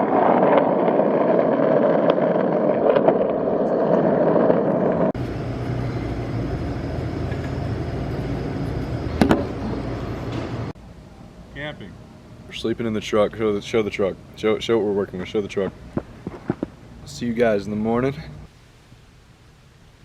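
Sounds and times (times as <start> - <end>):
vehicle noise rushing: 0.0 - 10.8
low engine hum: 4.6 - 11.4.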